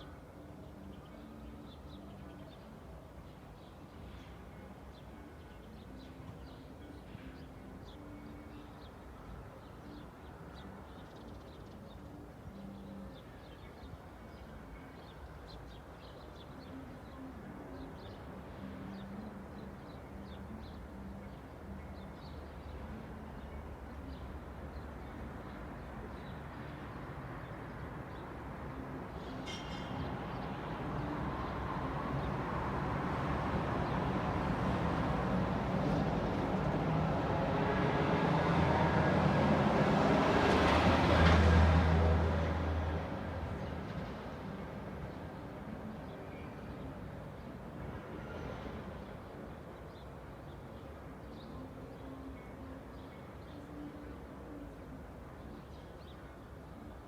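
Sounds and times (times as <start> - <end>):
distant traffic hum: 22.5 - 57.0.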